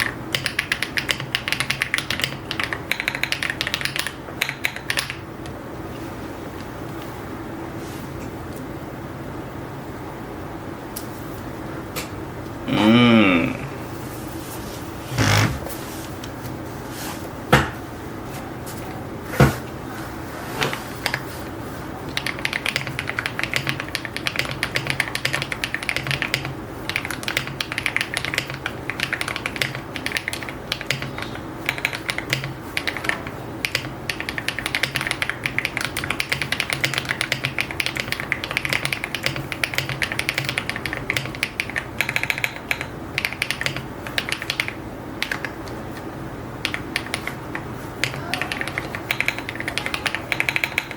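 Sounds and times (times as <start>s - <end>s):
mechanical keyboard typing: 0.0s - 5.3s, 20.7s - 21.3s, 22.1s - 45.8s, 46.6s - 50.9s.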